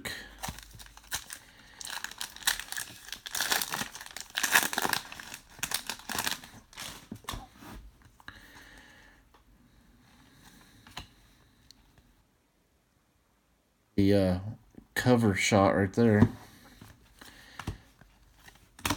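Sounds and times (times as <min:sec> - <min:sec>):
wrapper crinkling: 0:00.4 - 0:07.5.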